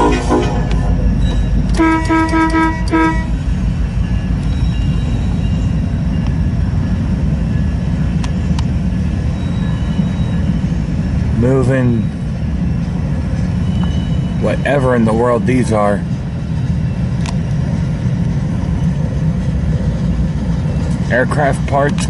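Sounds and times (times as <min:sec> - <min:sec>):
locomotive horn blast: 0:00.0 - 0:01.0, 0:01.7 - 0:03.5
freight train rumbling: 0:00.0 - 0:22.0.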